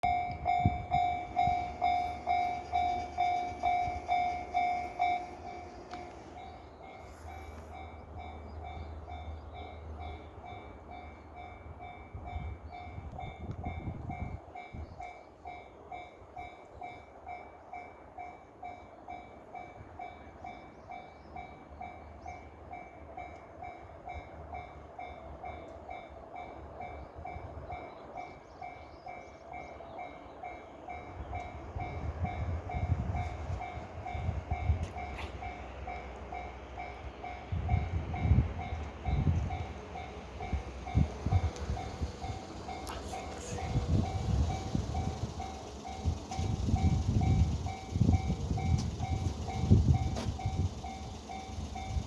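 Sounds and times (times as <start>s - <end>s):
level-crossing bell clanging: 0.0s - 14.8s, 32.8s - 52.0s
electric train rumbling: 0.0s - 52.0s.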